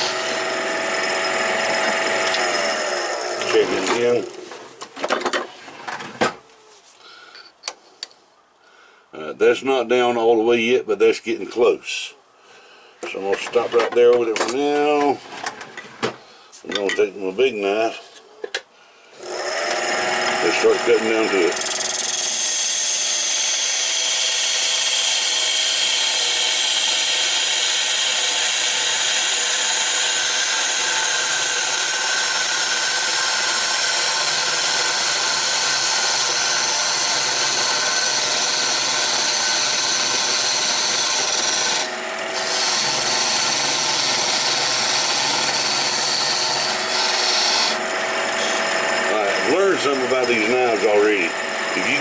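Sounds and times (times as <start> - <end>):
wood lathe whine: 0.0 - 4.4, 19.2 - 52.0
turning tool scraping wood: 0.0 - 4.8, 19.2 - 52.0.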